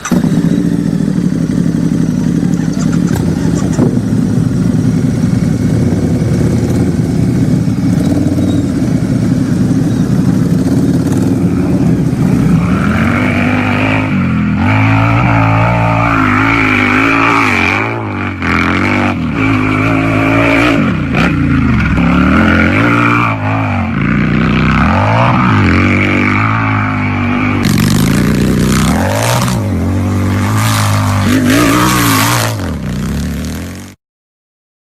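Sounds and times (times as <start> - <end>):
motorcycle engine idling: 0.0 - 12.6
motorcycle engine revving: 0.0 - 34.0.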